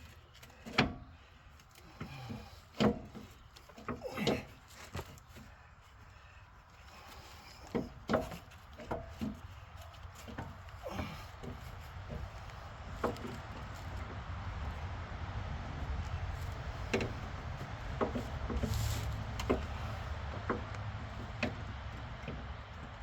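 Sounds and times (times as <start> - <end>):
steady low rumble: 11.3 - 23.0.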